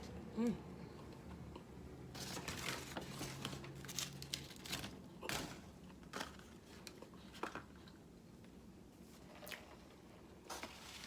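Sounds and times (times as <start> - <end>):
paper wrappers crinkling: 2.2 - 7.3.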